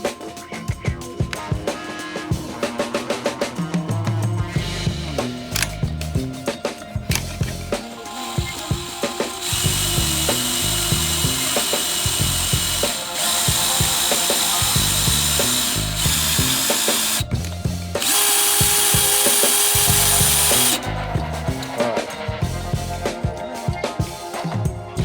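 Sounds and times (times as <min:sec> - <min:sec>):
background music with steady beat: 0:00.0 - 0:25.0
electric power drill whining: 0:07.1 - 0:20.8.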